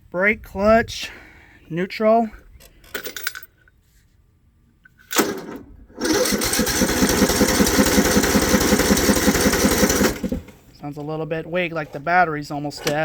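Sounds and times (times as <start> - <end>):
lawn mower engine cranking: 5.1 - 10.7.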